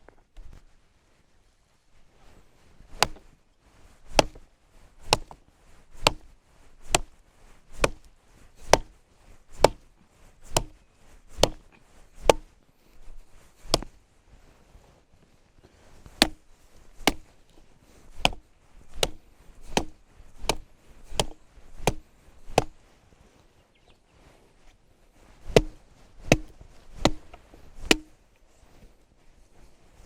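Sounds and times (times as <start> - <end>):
blade chopping on wood: 2.9 - 3.3, 4.1 - 4.4, 5.0 - 12.5, 13.6 - 14.0, 16.1 - 17.4, 18.1 - 22.8, 25.5 - 28.2.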